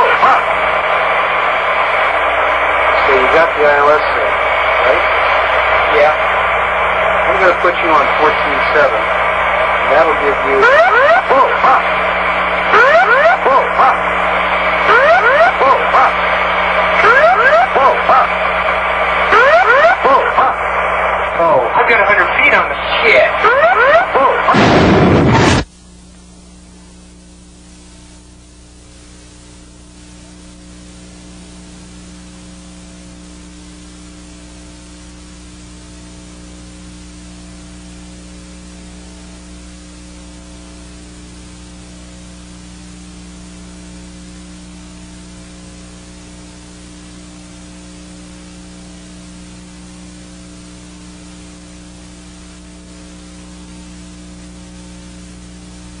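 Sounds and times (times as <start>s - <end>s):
low electrical hum: 0.0s - 56.0s
static hiss: 0.0s - 56.0s.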